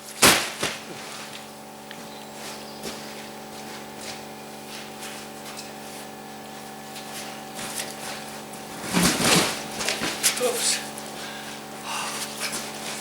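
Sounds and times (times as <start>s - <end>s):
tyres thudding onto plastic sheeting: 0.0s - 1.5s, 7.5s - 10.8s.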